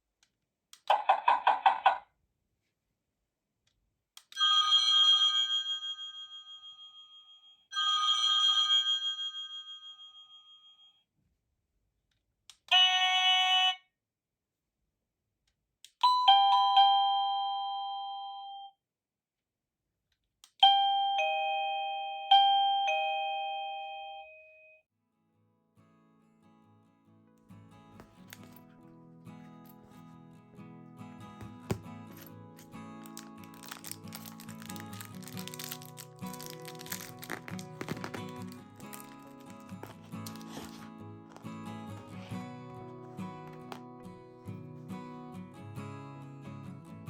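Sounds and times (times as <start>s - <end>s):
electronic doorbell chime tunes: 4.4s - 11.0s, 16.1s - 18.7s, 20.6s - 24.8s.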